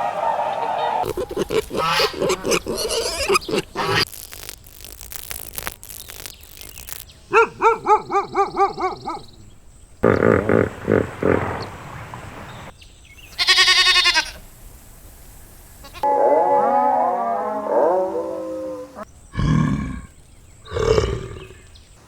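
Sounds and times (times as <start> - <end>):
overlapping gliding calls: 0.0 - 4.1
rough noisy animal calls: 0.0 - 12.7
short bleat-like calls: 13.4 - 14.4
wavering animal call: 16.0 - 19.1.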